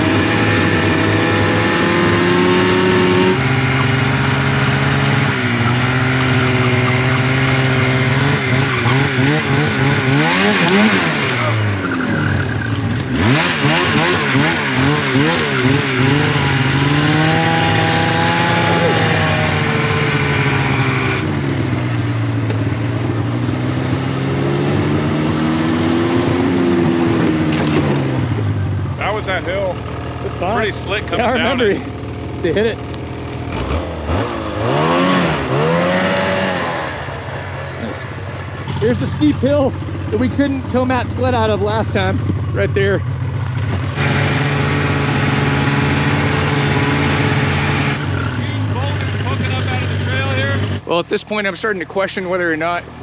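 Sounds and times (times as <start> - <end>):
snowmobile engine revving: 0.0 - 53.0.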